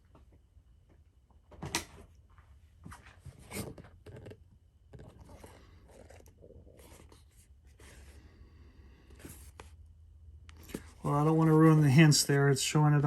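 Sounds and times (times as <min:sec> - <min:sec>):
cardboard scraping and rustling: 0:02.9 - 0:08.2.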